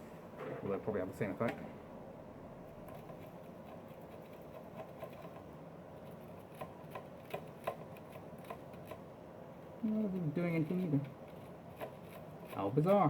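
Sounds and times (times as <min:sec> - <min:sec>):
scratching on metal screw terminal: 0:02.8 - 0:09.1.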